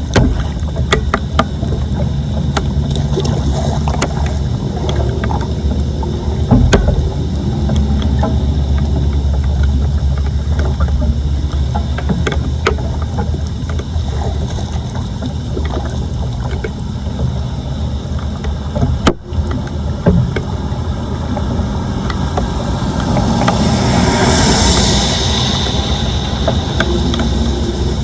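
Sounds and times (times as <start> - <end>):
floodwater sloshing and rushing: 0.0 - 28.0
wind rumble on microphone: 0.0 - 28.0
knocks and clicks: 3.9 - 13.9.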